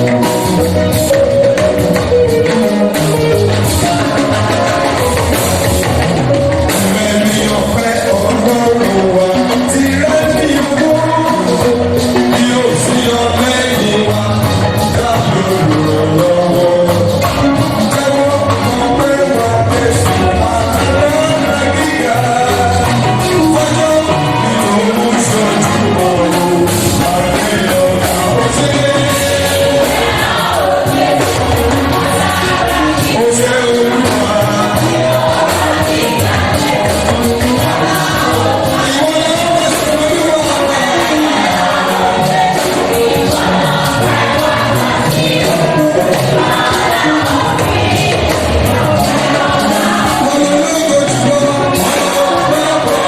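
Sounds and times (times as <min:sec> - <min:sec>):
bass line: 0:00.0 - 0:53.0
choir singing gospel: 0:00.0 - 0:53.0
drum and cymbal beats: 0:00.0 - 0:53.0
instrumental accompaniment: 0:00.0 - 0:53.0.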